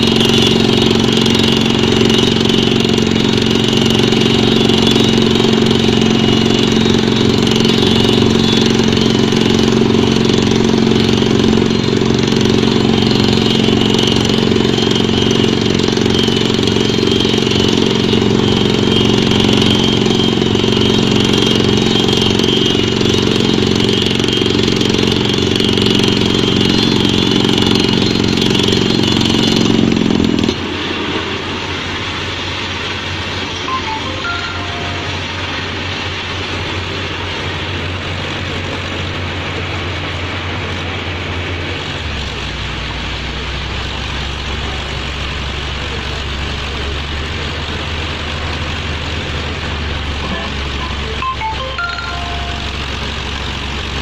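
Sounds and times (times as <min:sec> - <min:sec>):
pneumatic drilling rig droning: 0:00.0 - 0:54.0.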